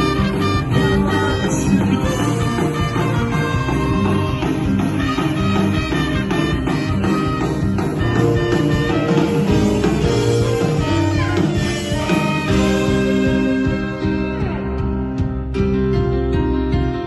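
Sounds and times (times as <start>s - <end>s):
band playing a worship song: 0.0s - 17.0s
electric guitar with sliding notes: 0.0s - 17.0s.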